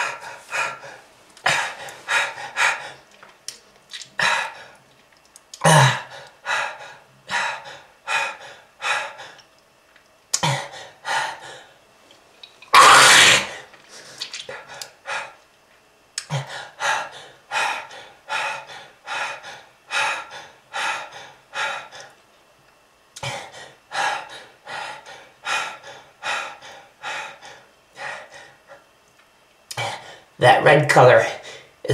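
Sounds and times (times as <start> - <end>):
person coughing: 5.6 - 6.1.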